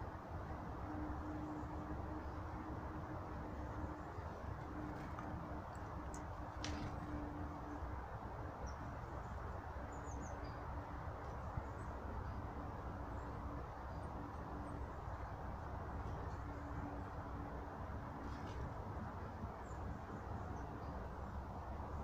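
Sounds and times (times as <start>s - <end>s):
small birds chirping: 8.5s - 12.1s.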